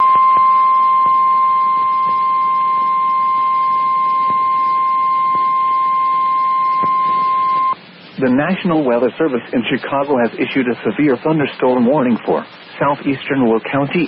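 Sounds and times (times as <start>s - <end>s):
steady alarm tone: 0.0s - 7.8s
radio hiss: 0.0s - 14.0s.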